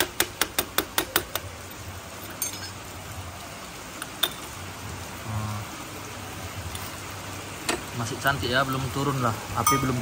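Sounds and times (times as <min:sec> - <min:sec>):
rain hissing: 0:00.0 - 0:10.0
metal tools clinking: 0:02.2 - 0:02.8.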